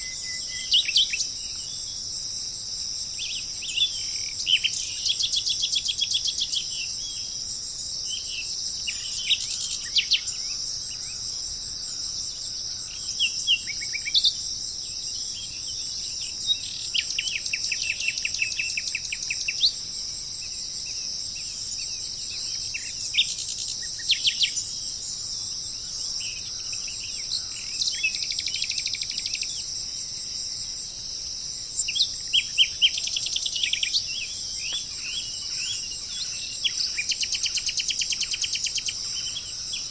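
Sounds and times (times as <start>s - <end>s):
crickets chirping: 0.0s - 39.9s
songbirds chirping and trilling: 0.0s - 39.9s.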